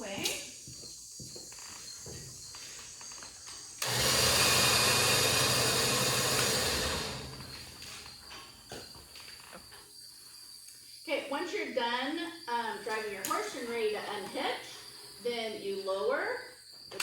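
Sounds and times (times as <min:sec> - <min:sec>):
winch humming with hiss: 0:03.8 - 0:07.8.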